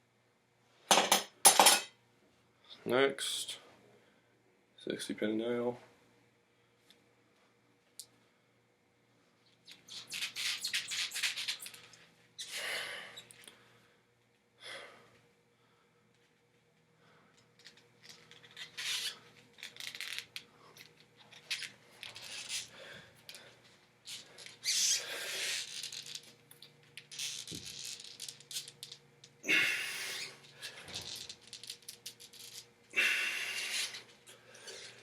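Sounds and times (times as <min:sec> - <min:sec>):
person breathing forceful exhales: 0:29.4 - 0:30.4, 0:32.9 - 0:35.0.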